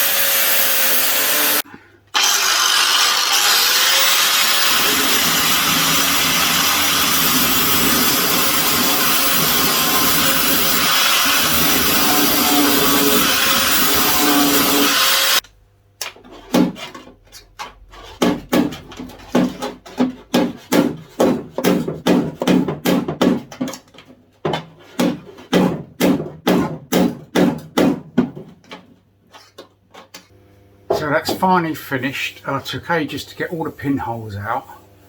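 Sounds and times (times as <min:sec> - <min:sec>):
power tool running: 0:00.0 - 0:15.4.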